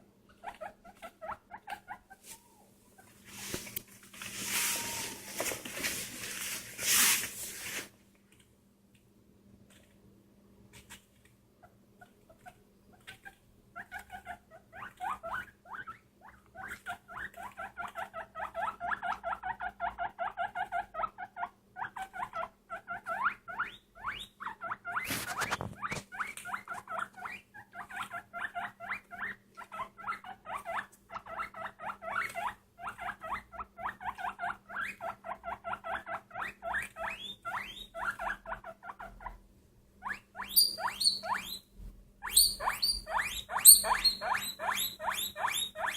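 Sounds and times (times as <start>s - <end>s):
small animal squeaking: 0.3s - 3.1s, 4.6s - 5.4s, 12.0s - 39.4s, 40.0s - 45.9s
sharp rustling: 3.2s - 7.9s.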